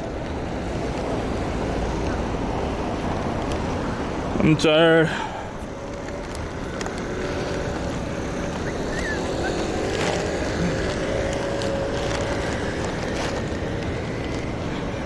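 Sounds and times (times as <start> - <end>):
road traffic rumble: 0.0 - 15.0
wind buffeting microphone: 0.0 - 15.0
faint engine tone: 5.2 - 15.0.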